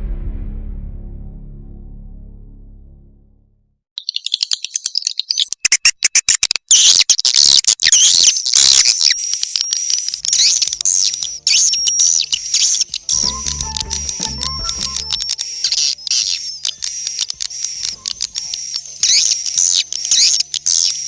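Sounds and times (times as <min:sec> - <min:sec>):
bird chirps and twittering trills: 0:04.0 - 0:06.3, 0:09.8 - 0:21.0
fast clicks: 0:04.0 - 0:21.0.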